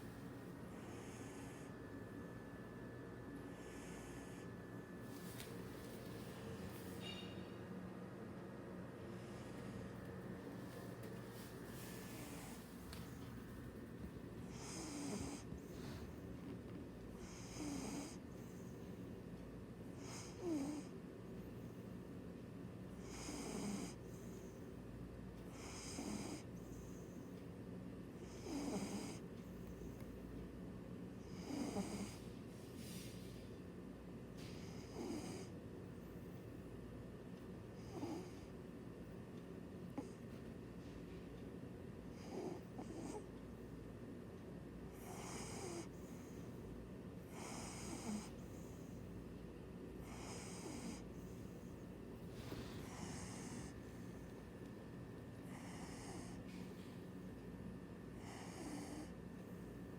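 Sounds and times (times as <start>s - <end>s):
cat snoring: 0.7s - 1.7s, 3.5s - 4.5s, 12.0s - 13.3s, 14.5s - 16.0s, 17.2s - 18.7s, 20.0s - 20.9s, 23.0s - 24.6s, 25.5s - 27.2s, 28.2s - 29.2s, 31.3s - 32.3s, 34.6s - 35.5s, 37.8s - 38.4s, 40.0s - 40.2s, 42.1s - 43.3s, 44.9s - 46.4s, 47.2s - 49.0s, 50.0s - 51.8s, 52.4s - 54.3s, 55.5s - 56.6s, 58.2s - 59.2s.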